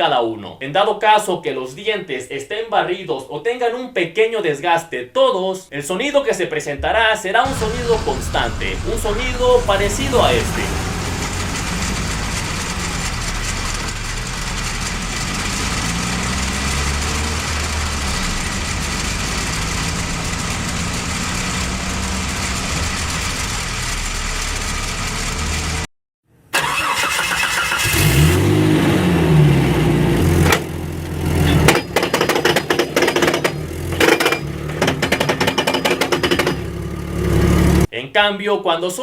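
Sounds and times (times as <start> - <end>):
engine revving: 7.4 - 25.9, 26.6 - 37.9.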